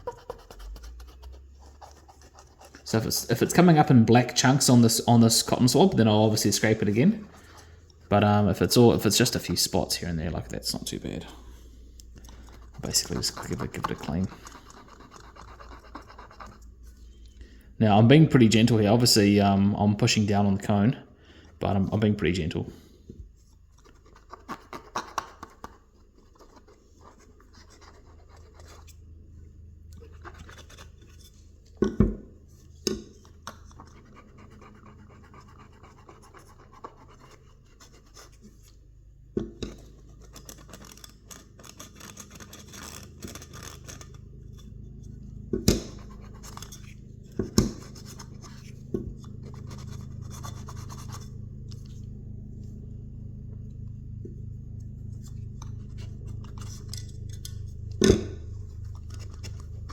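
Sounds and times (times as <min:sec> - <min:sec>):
cotton bud scrubbing speaker rim: 0:00.0 - 0:17.1, 0:23.4 - 0:29.3, 0:32.5 - 0:38.8, 0:41.6 - 0:52.2
steady low hum: 0:00.0 - 0:59.9.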